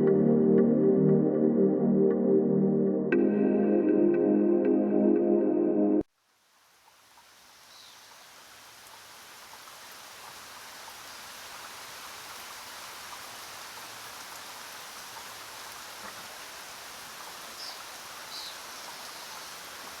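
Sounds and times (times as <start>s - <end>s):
hiss of rain: 6.1s - 20.0s.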